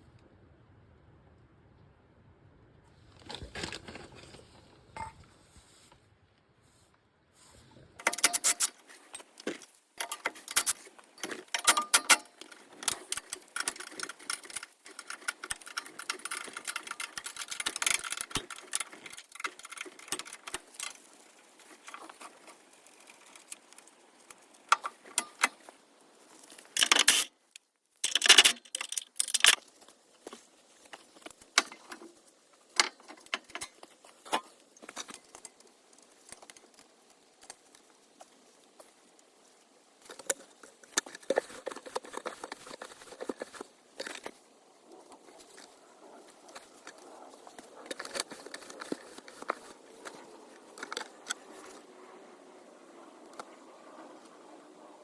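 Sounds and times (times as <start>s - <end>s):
metal tools clinking and rattling: 8.0s - 23.6s.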